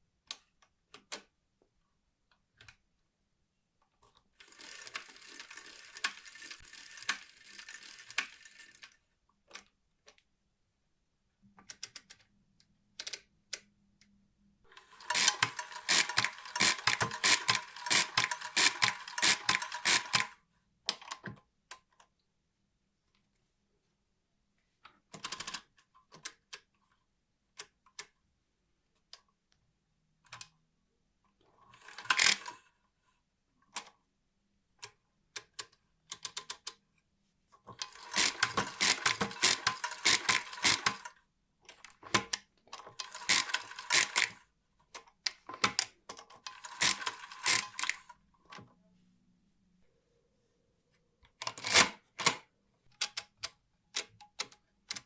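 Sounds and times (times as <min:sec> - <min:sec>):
metal mechanism clicking: 0:14.8 - 0:21.8, 0:31.8 - 0:32.6, 0:37.7 - 0:41.1, 0:41.7 - 0:48.1, 0:51.4 - 0:55.0.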